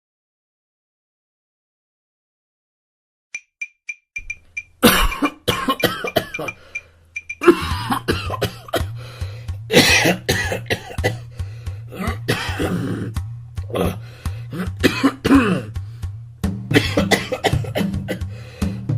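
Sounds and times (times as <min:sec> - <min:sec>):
person coughing: 0:04.8 - 0:06.7, 0:07.4 - 0:09.0, 0:09.7 - 0:11.3, 0:11.9 - 0:13.1, 0:13.7 - 0:15.7, 0:16.7 - 0:18.2
background music with bass note: 0:05.8 - 0:18.9.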